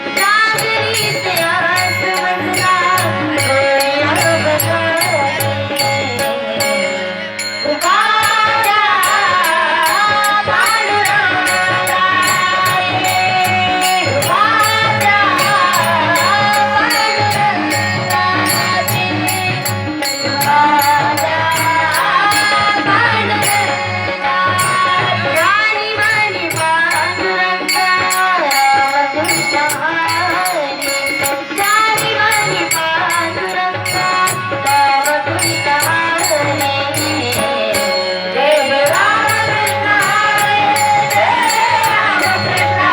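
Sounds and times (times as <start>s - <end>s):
high percussion strokes: 0.0s - 42.9s
steady held drone: 0.0s - 42.9s
woman singing: 0.0s - 42.9s.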